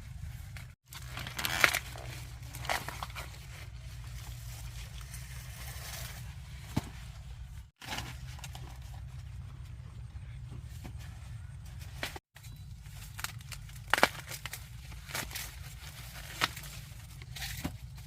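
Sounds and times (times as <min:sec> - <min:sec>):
dry corn leaves rustling: 0:00.2 - 0:18.0
corn ears snapping off stalks: 0:13.0 - 0:18.0.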